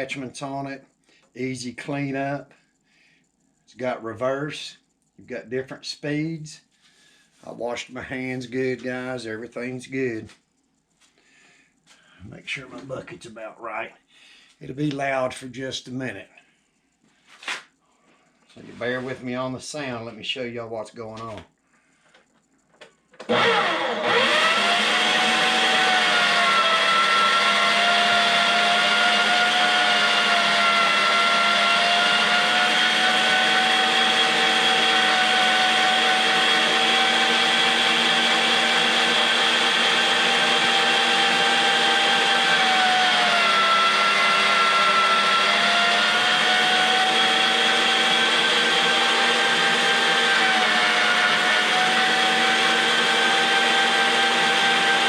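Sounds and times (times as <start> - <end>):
electric meat grinder motor whine: 22.8 - 55.0.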